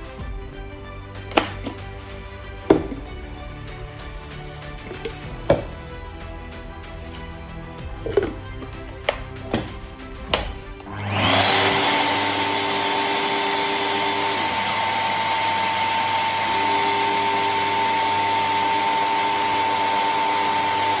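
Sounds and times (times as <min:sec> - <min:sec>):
vacuum cleaner motor whine: 0:01.3 - 0:01.9, 0:08.0 - 0:21.0.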